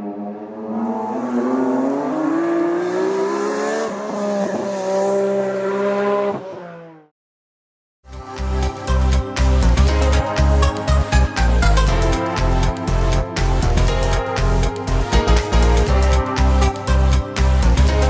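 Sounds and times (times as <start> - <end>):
race car engine accelerating: 0.0 - 7.1
electronic music: 8.1 - 18.0.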